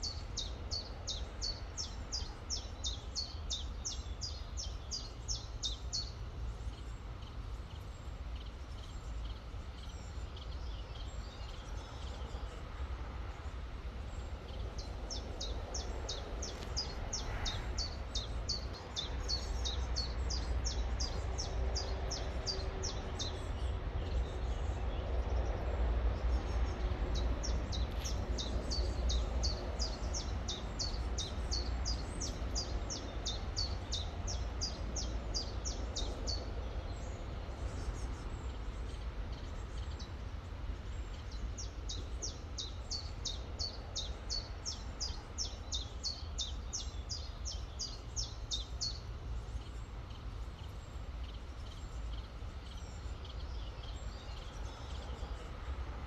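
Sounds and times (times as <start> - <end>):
songbird calling: 14.1 - 25.0, 26.3 - 40.2, 40.9 - 55.7.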